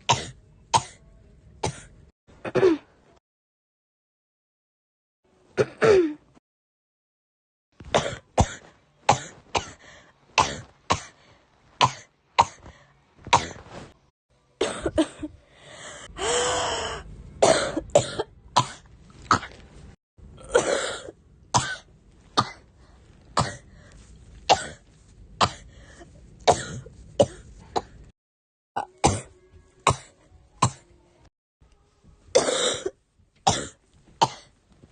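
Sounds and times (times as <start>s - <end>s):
girl coughing: 1.6s - 2.9s, 5.6s - 6.2s, 14.6s - 15.3s, 17.4s - 19.5s, 20.5s - 21.8s, 26.5s - 27.9s, 32.4s - 34.5s.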